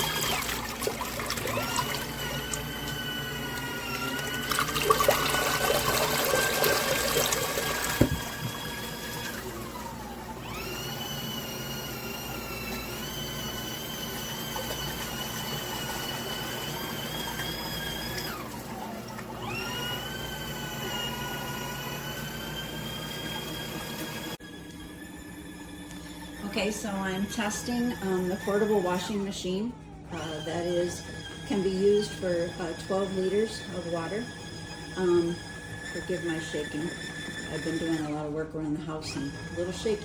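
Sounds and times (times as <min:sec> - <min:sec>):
water sloshing: 0:00.0 - 0:09.8
washing machine motor whine: 0:00.0 - 0:40.0.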